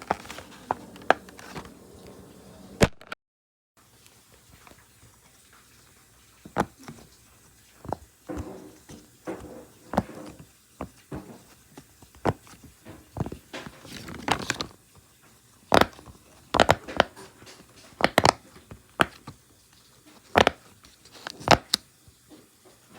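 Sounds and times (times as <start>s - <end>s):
rustling: 0.0s - 2.8s.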